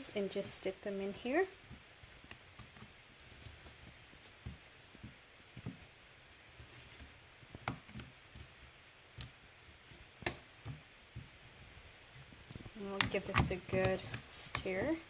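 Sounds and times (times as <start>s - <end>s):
potato slices tapping in bowl: 12.6s - 14.9s.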